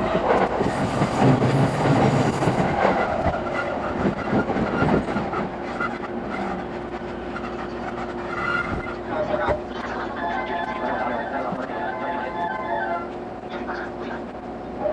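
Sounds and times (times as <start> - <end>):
train wheels clattering over rails: 0.0 - 9.8
steady train hum: 0.0 - 14.9.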